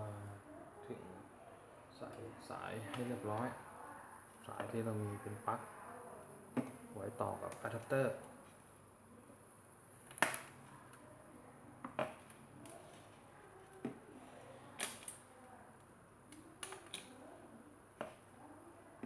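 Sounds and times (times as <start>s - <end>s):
small parts and cable clicking: 11.8s - 14.0s, 14.7s - 17.3s.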